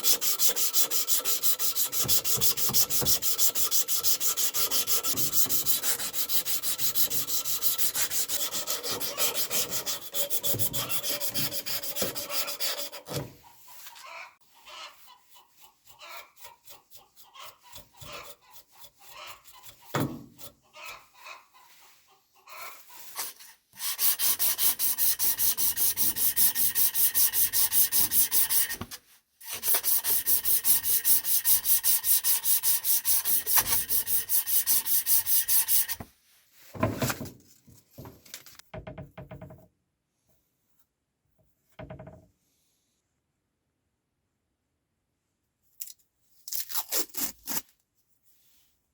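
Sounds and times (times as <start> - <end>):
hand sanding strokes: 0.0 - 13.1, 23.0 - 36.0.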